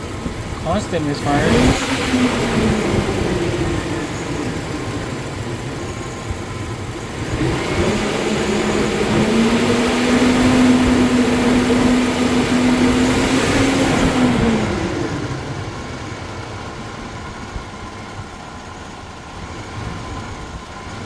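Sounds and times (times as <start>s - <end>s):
misfiring engine idling: 0.0s - 21.0s.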